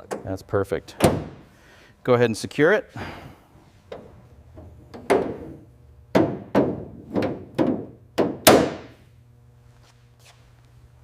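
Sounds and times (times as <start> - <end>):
hammer knocks on metal panel: 6.1 - 8.9.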